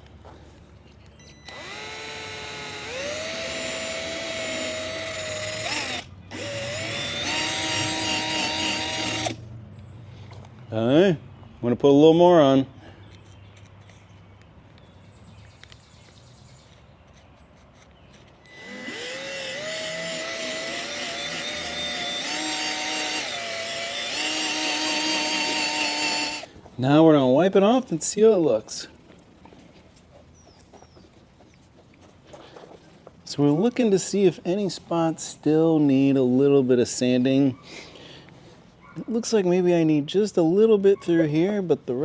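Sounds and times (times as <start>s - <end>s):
power drill motor whine: 1.2s - 9.4s, 18.4s - 26.5s.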